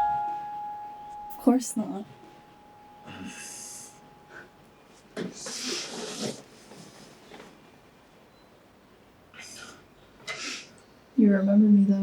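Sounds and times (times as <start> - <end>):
person breathing heavily: 3.0 - 4.6.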